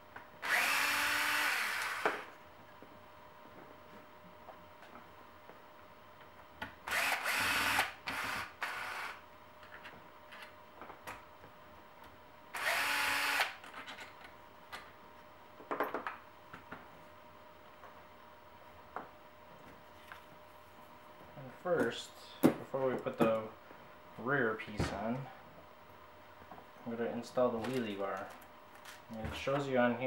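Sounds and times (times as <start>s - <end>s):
cordless drill running: 0.4s - 2.3s, 6.9s - 9.2s, 12.5s - 13.6s.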